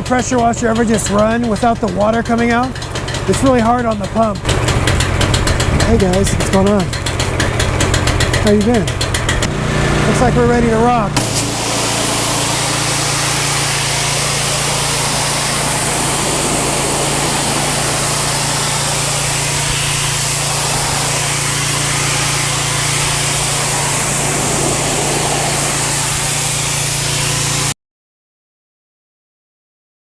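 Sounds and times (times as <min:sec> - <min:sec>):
pressure washer engine running: 0:00.0 - 0:27.8
high-pressure spray hissing: 0:09.4 - 0:27.8.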